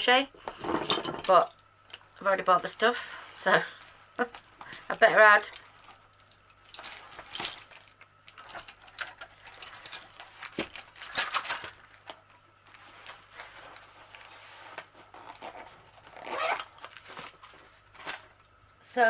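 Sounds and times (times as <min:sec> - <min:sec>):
packaging rustling and crinkling: 0:03.7 - 0:18.5.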